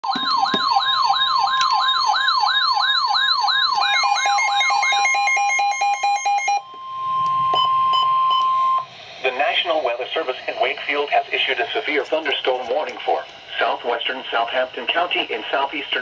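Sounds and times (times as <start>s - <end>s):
rising siren sweep: 0.0s - 9.2s
alternating high and low beeps: 0.1s - 10.6s.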